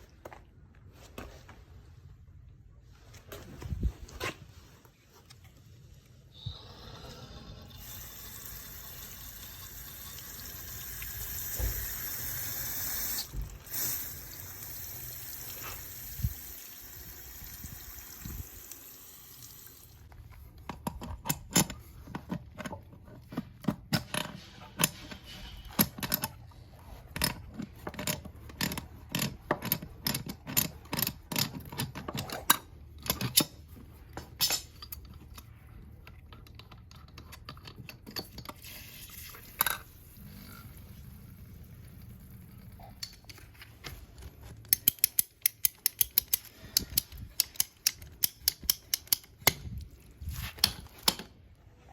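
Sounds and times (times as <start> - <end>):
water running: 7.0 - 20.1
sharp clicks and knocks: 44.6 - 49.8.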